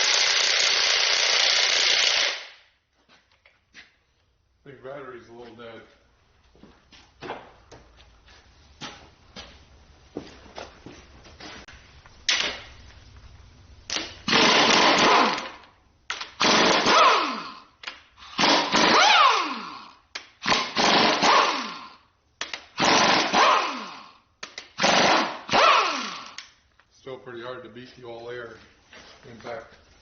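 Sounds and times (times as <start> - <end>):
air impact wrench hammering: 0.0 - 2.6, 13.9 - 26.6.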